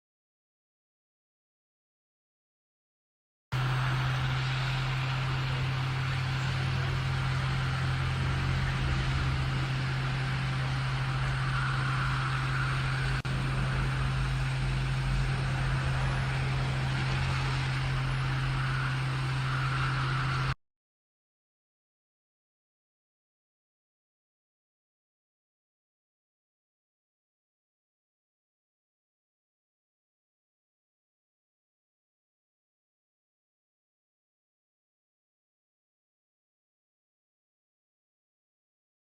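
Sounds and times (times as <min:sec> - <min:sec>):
hot air blower rushing: 0:03.6 - 0:20.6
low motor hum: 0:03.6 - 0:20.6.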